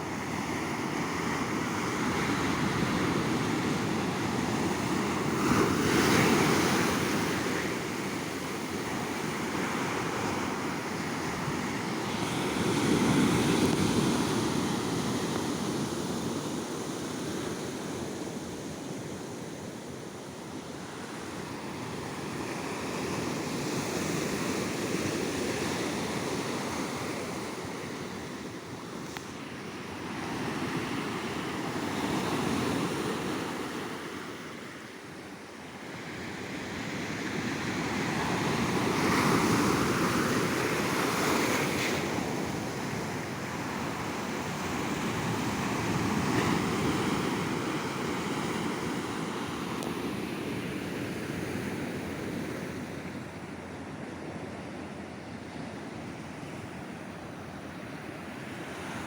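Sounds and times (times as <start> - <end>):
sea waves breaking on beach: 0.0 - 16.4.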